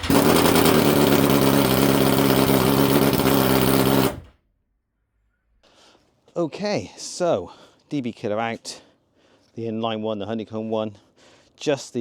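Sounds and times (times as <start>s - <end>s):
motorcycle engine idling high: 0.0s - 4.3s.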